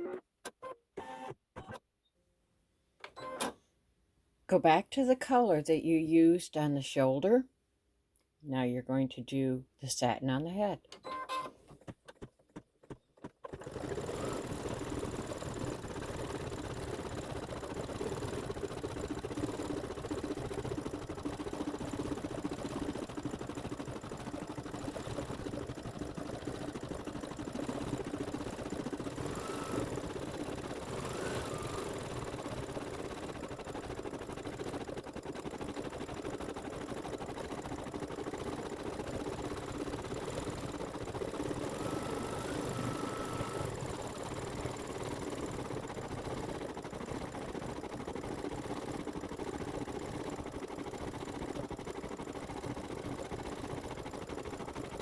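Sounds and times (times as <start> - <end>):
embroidery machine stitching: 11.1 - 55.0.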